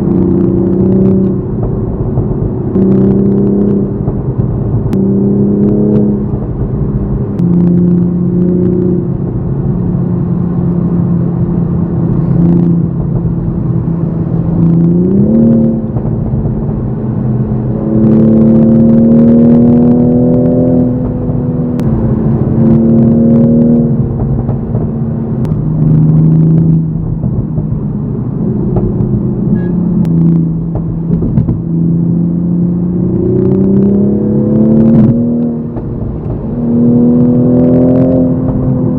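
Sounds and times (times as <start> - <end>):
car engine running: 0.0 - 38.9
sharp exhaust pops: 0.8 - 10.7, 20.4 - 31.8.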